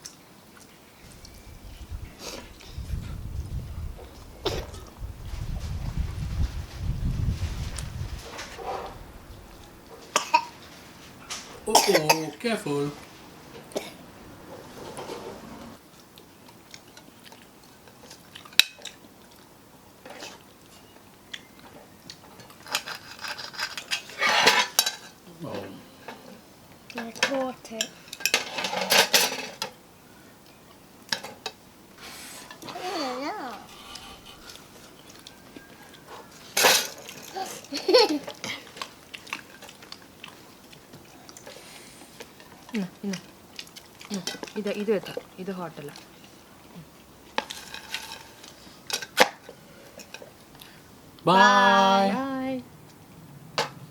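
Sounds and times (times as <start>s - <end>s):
cutlery and plates clinking: 22.7s - 25.2s, 27.1s - 29.8s, 36.0s - 38.4s, 47.4s - 50.3s
plates and cutlery clinking: 22.7s - 25.2s, 27.2s - 29.7s.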